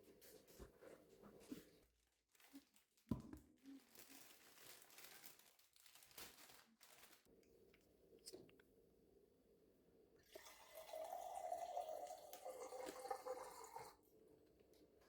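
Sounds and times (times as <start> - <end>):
packaging crinkling and rustling: 1.8 - 7.3.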